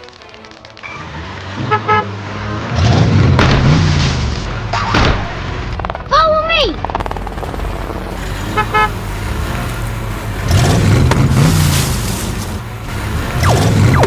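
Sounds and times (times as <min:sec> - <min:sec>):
engine rumble: 0:00.0 - 0:14.0
cartoon car horn toots: 0:01.6 - 0:02.4, 0:08.0 - 0:14.0.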